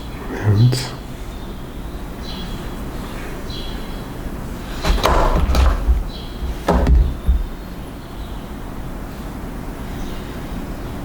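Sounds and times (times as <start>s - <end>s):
hardware knocking on a desk: 4.8s - 7.6s.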